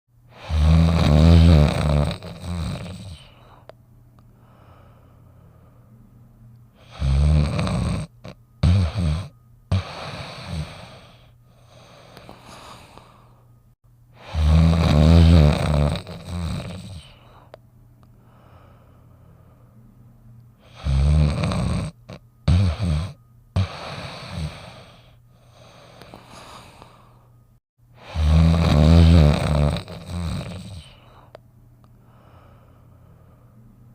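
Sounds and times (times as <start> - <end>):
cartoon snoring: 0.3 - 3.4, 6.8 - 13.1, 14.2 - 17.3, 20.6 - 27.0, 28.0 - 31.3
short snorts: 0.3 - 3.7, 6.8 - 13.2, 14.2 - 17.5, 20.6 - 27.1, 28.0 - 31.4.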